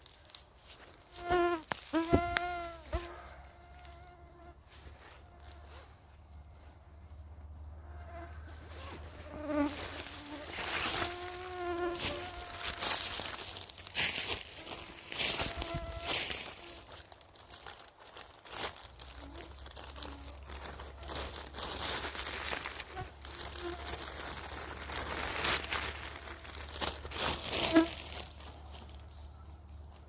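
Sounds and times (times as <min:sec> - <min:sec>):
dry undergrowth rustling and crackling: 0:00.0 - 0:30.0
insect buzz: 0:08.0 - 0:13.0.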